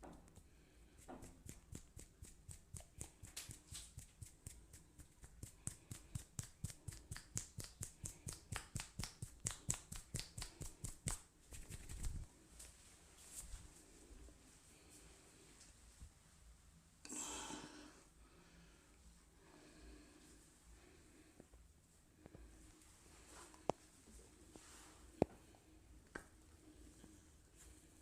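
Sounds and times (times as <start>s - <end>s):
hand slaps on body: 1.0s - 12.2s.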